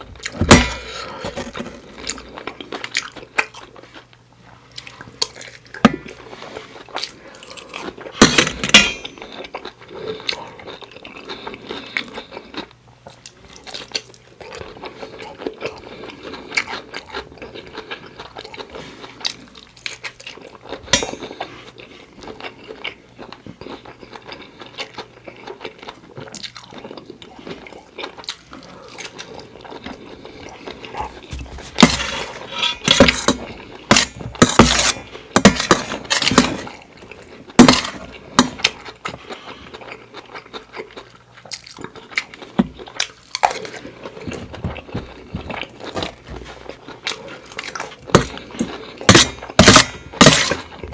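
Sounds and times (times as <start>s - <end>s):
chewing and biting: 1.5s - 8.2s, 9.0s - 50.9s.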